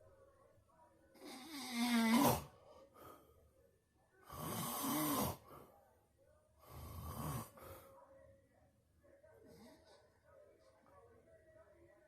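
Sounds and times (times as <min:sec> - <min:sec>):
quiet breathing: 0:01.0 - 0:08.4
loud snoring: 0:01.2 - 0:02.5, 0:04.3 - 0:05.4.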